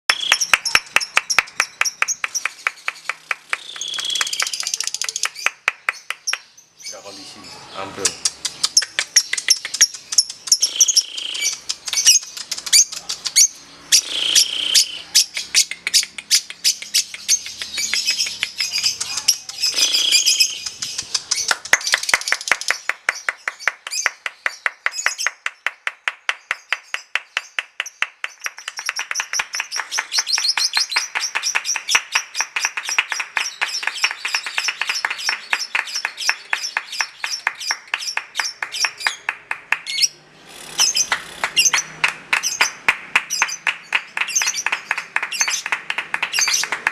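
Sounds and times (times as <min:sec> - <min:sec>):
lovebird chattering chirps: 0:00.1 - 0:22.4, 0:40.0 - 0:43.7.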